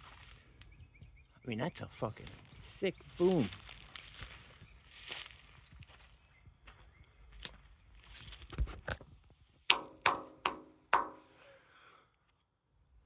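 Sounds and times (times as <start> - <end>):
knocks on heavy steel: 9.7 - 11.3.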